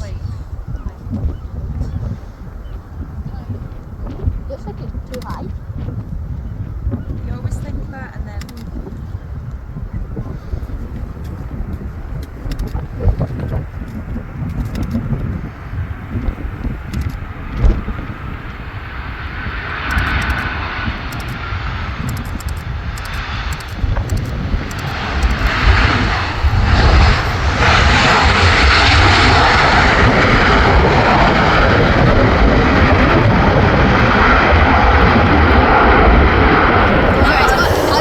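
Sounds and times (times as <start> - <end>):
wind rumble on microphone: 0.0 - 38.0
jet engines roaring: 10.8 - 38.0.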